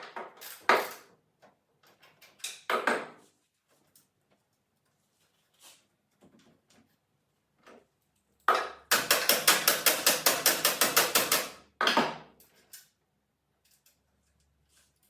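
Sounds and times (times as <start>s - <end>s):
rapid mechanical knocks of shop tool: 8.5s - 12.3s.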